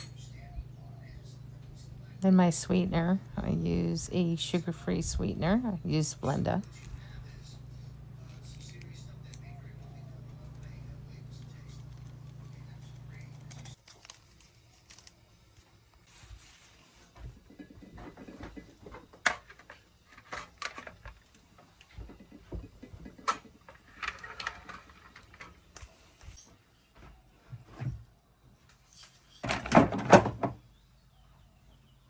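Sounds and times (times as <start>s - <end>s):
steady low hum: 0.0s - 13.8s
kitchen utensils clicking and knocking: 22.1s - 25.9s, 29.1s - 30.6s.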